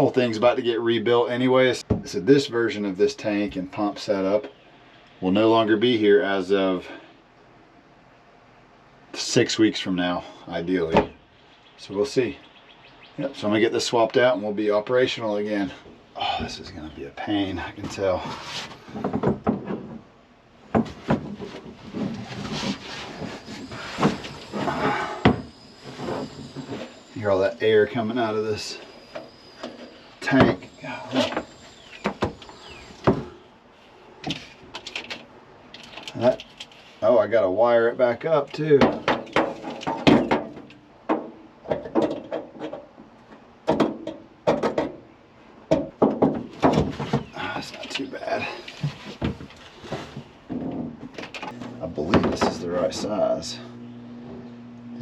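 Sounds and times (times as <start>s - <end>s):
tools knocking and clattering: 38.8s - 45.0s.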